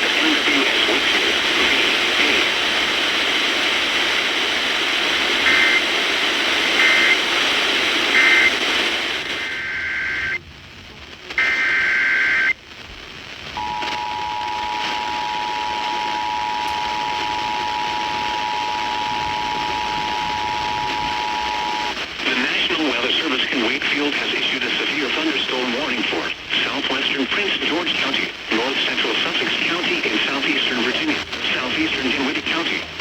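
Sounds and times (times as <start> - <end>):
static hiss: 0.0 - 33.0
digital data tone bursts: 13.6 - 21.9
two-tone attention signal: 13.6 - 21.9.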